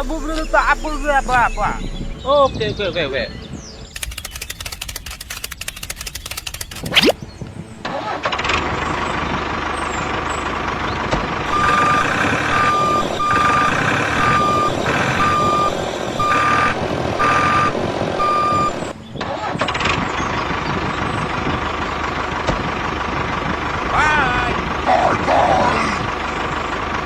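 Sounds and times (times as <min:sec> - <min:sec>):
rapid clicking with rising whine: 0:04.0 - 0:07.2
small vehicle motor running: 0:04.0 - 0:07.2
reversing alarm beeping: 0:11.5 - 0:18.9.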